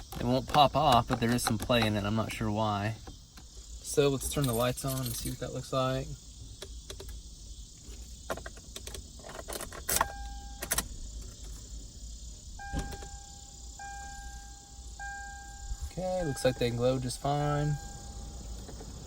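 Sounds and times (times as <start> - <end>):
switches and keys clicking: 0.0 - 2.1, 6.6 - 7.2, 8.3 - 11.6, 12.6 - 15.6
dashboard warning chime: 10.0 - 10.8, 12.6 - 18.6.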